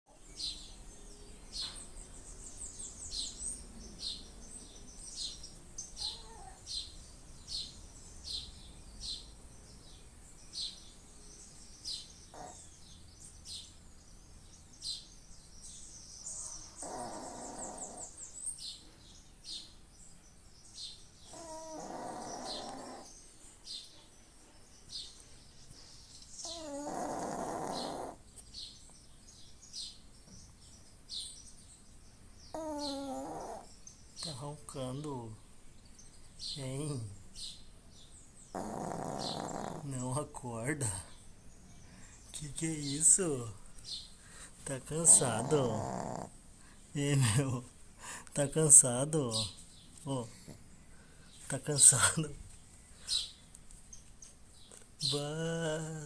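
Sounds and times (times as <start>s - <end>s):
small birds chirping: 0.1s - 56.0s
dog snoring: 12.3s - 12.6s, 16.8s - 18.2s, 21.3s - 23.1s, 26.4s - 28.2s, 32.5s - 33.7s, 38.5s - 40.0s, 45.0s - 46.4s.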